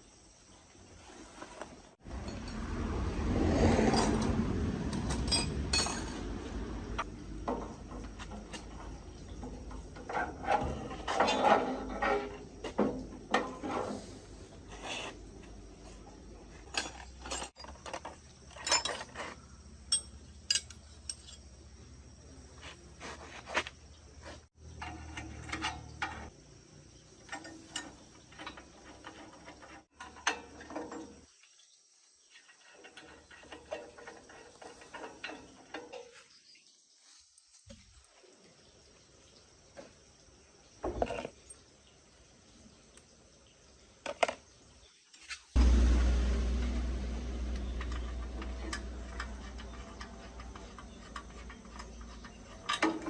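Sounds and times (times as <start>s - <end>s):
metal tools clinking: 2.1s - 3.0s, 3.8s - 4.4s, 5.0s - 6.4s, 16.6s - 21.5s, 27.3s - 31.2s, 46.4s - 53.0s.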